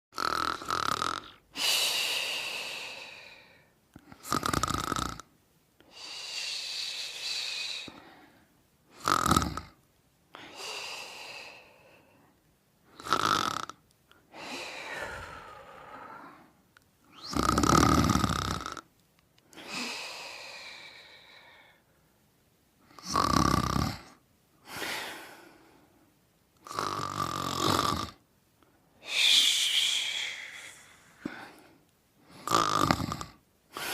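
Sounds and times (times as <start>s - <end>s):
person snoring: 0.2s - 5.3s, 5.9s - 8.0s, 8.9s - 9.8s, 12.9s - 18.9s, 22.9s - 25.6s, 26.6s - 28.2s, 29.0s - 33.9s.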